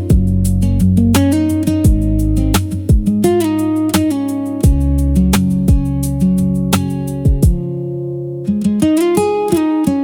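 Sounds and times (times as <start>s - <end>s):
bass line: 0.0s - 3.9s, 4.6s - 7.8s
steady drum beat: 0.0s - 7.7s
guitar: 0.0s - 10.0s.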